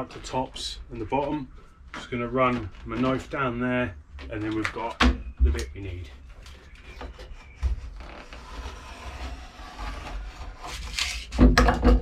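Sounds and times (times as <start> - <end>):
utility knife cutting mat: 6.9 - 11.4.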